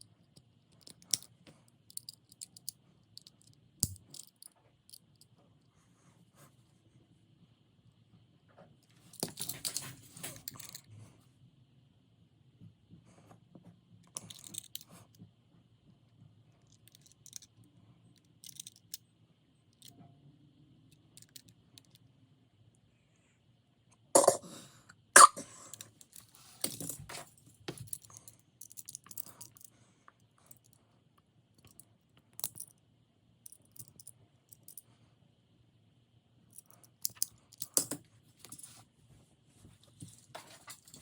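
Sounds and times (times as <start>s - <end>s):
toy cars clicking and clinking: 18.3s - 19.0s.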